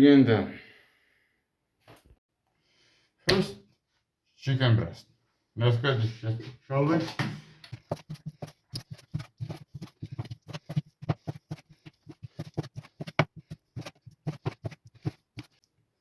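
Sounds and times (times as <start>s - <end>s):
knife chopping on cutting board: 7.7s - 15.5s.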